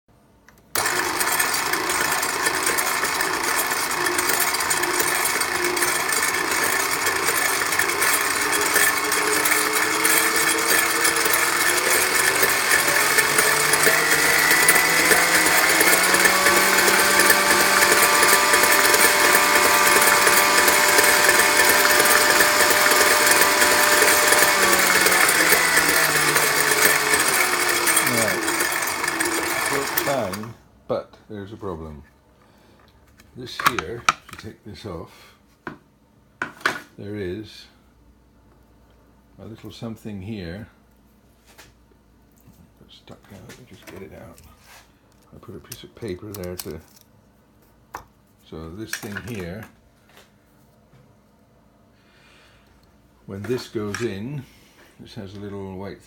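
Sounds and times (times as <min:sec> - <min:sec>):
food mixer motor whining: 0:00.8 - 0:30.6.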